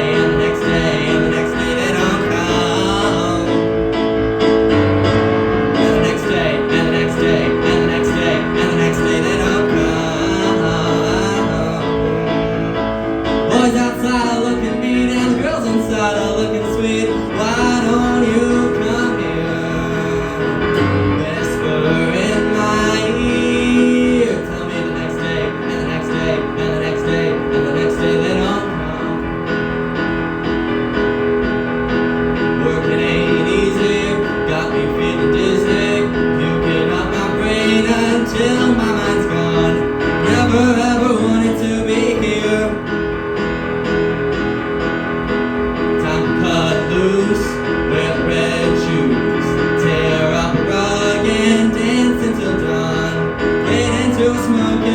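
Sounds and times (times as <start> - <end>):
person singing show tune: 0.0 - 29.9, 32.5 - 44.1, 45.6 - 54.9
keyboard accompaniment: 0.0 - 54.9.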